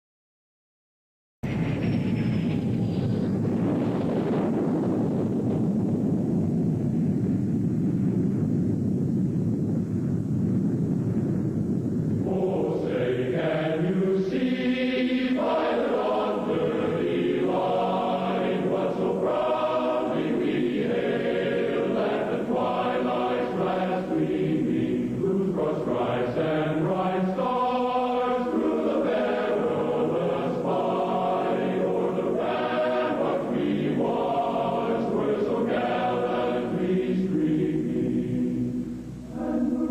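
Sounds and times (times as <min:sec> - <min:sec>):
low steady rumbling: 0:01.4 - 0:39.9
choir singing anthem: 0:12.2 - 0:39.9.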